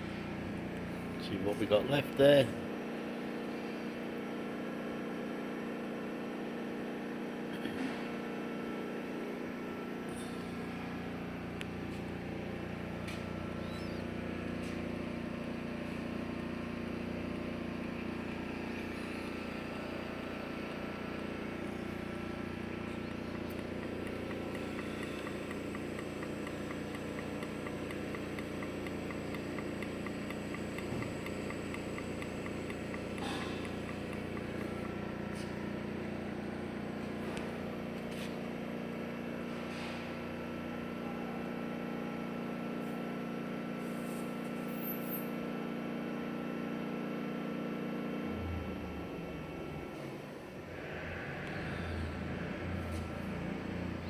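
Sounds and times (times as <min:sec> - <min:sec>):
welding power source humming: 0:10.6 - 0:39.2
deeper hum: 0:17.7 - 0:37.8.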